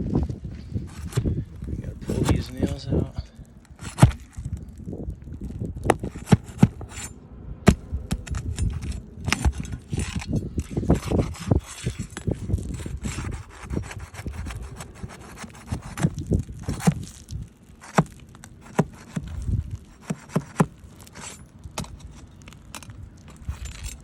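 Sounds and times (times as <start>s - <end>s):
scraping nails from shingles: 0.9s - 1.3s, 3.7s - 4.6s, 5.9s - 7.1s, 7.7s - 24.0s.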